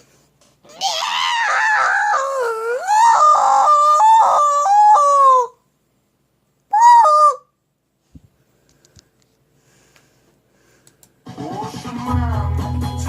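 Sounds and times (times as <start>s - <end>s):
high-pitched wailing cry: 0.7s - 5.6s, 6.7s - 7.5s.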